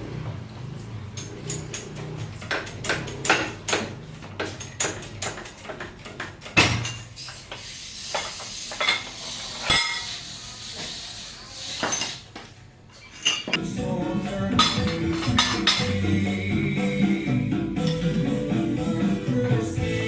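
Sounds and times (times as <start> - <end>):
metal tools clinking: 12.9 - 13.6.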